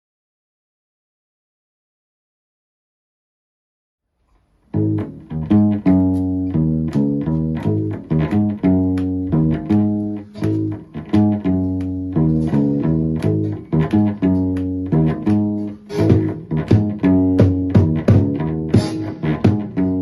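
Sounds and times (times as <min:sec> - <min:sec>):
plucked string instrument: 0:04.7 - 0:20.0.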